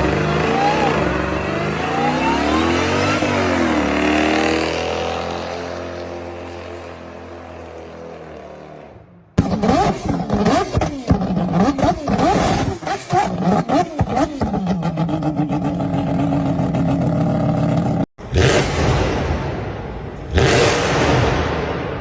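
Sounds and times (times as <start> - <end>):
car engine revving: 0.0 - 6.0.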